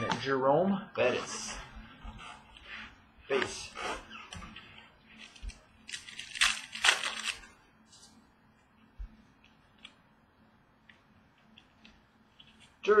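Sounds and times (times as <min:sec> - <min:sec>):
trading cards rustling and scraping: 0:04.5 - 0:08.2, 0:11.4 - 0:12.8.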